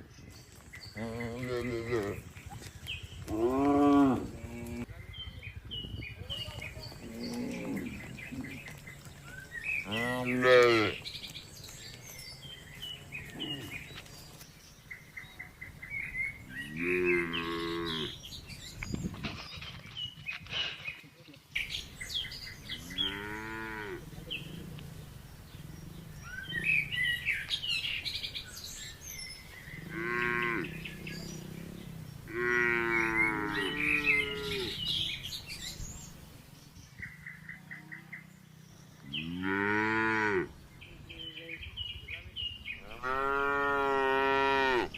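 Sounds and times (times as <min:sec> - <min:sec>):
small birds chirping: 0:00.0 - 0:44.9
cows mooing: 0:01.0 - 0:02.3, 0:03.2 - 0:04.9, 0:06.9 - 0:08.8, 0:09.8 - 0:11.1, 0:16.6 - 0:18.2, 0:22.6 - 0:26.9, 0:29.7 - 0:35.2, 0:39.0 - 0:40.5, 0:42.8 - 0:44.9.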